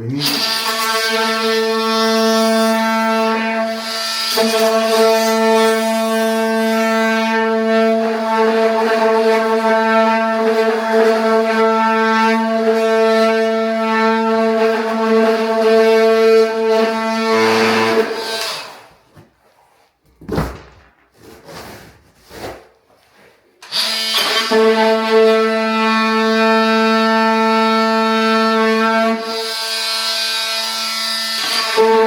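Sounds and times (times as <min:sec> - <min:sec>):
power tool motor whining: 0:17.2 - 0:18.7.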